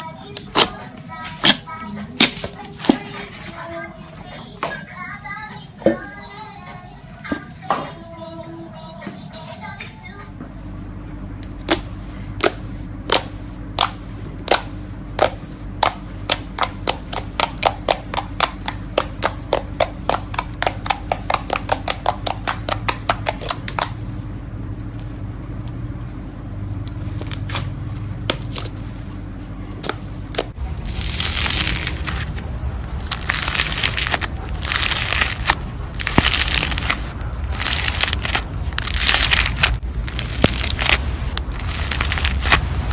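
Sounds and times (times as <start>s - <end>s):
low hum: 0.0s - 42.9s
crunchy slime squishes: 11.6s - 24.0s, 26.8s - 42.9s.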